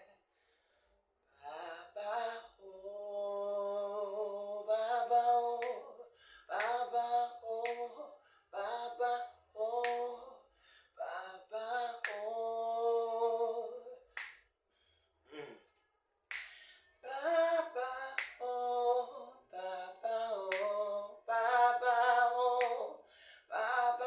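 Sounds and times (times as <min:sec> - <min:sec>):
person singing slow melody: 0:01.4 - 0:14.4, 0:15.3 - 0:24.0
finger snaps: 0:05.6 - 0:08.0, 0:09.8 - 0:10.3, 0:11.8 - 0:12.4, 0:14.1 - 0:14.5, 0:16.3 - 0:17.2, 0:18.0 - 0:18.6, 0:20.4 - 0:20.9, 0:22.6 - 0:23.0.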